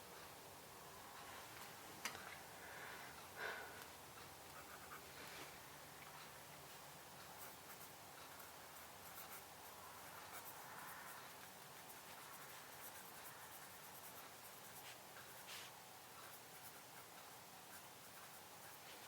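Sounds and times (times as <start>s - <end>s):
writing on paper: 4.2s - 5.2s, 7.2s - 19.0s.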